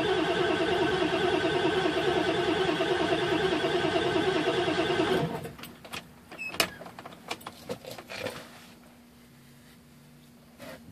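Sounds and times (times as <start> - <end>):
diesel engine starter cranking: 0.0 - 6.1.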